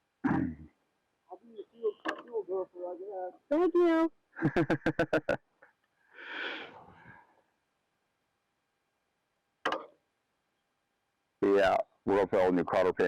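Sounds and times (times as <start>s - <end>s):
person laughing: 4.4s - 5.4s
breathy exhale: 6.1s - 7.3s.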